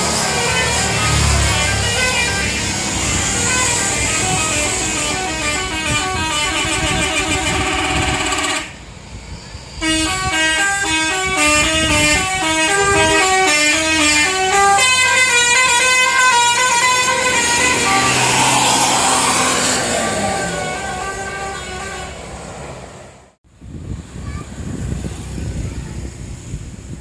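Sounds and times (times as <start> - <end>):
bus horn playing a tune: 0.0 - 8.8, 9.8 - 18.5, 19.7 - 22.4.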